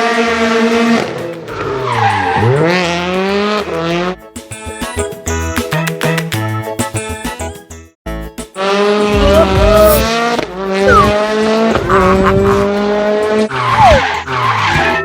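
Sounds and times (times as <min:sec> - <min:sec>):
race car engine at high revs: 0:00.0 - 0:04.1, 0:08.6 - 0:14.6
tire squeals: 0:01.5 - 0:03.0, 0:10.8 - 0:15.0.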